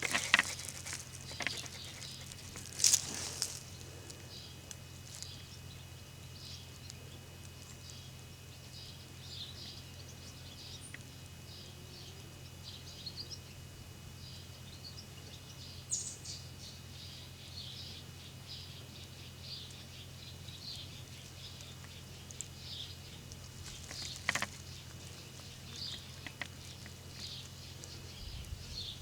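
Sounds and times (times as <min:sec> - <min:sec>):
small birds chirping: 0:00.0 - 0:29.0
steady low hum: 0:00.0 - 0:29.0.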